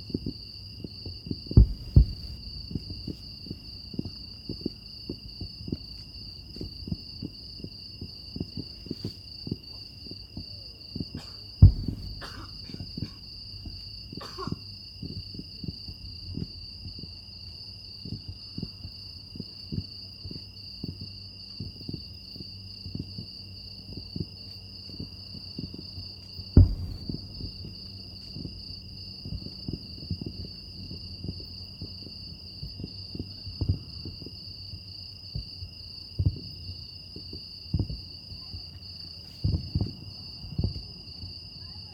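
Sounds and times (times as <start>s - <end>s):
insects trilling: 0.0s - 41.9s
distant fireworks thumps: 0.1s - 9.6s, 10.4s - 17.0s, 26.6s - 32.0s.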